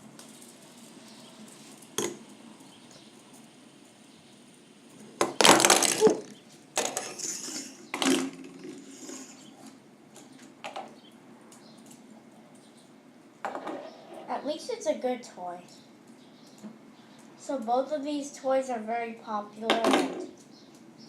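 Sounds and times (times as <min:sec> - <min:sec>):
fidget spinner clicks and knocks: 0:05.2 - 0:09.4.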